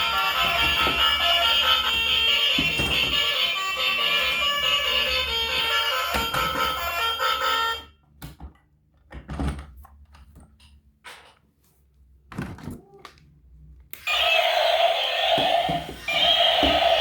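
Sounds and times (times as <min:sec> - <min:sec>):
music: 0:00.0 - 0:07.9.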